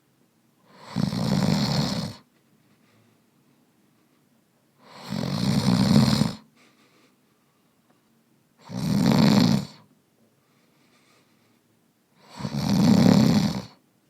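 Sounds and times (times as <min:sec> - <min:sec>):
man snoring: 0:00.7 - 0:02.2, 0:04.8 - 0:06.4, 0:08.6 - 0:09.9, 0:12.2 - 0:13.8.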